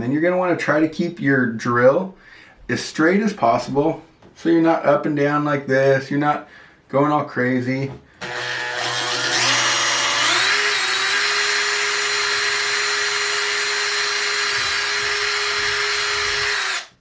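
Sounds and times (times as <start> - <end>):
power drill drilling wood: 8.2 - 17.0.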